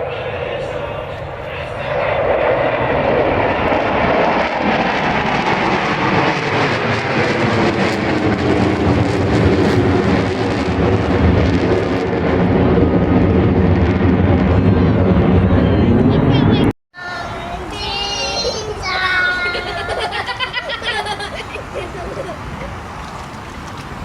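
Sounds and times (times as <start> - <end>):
jet aircraft flying past: 0.0 - 24.0.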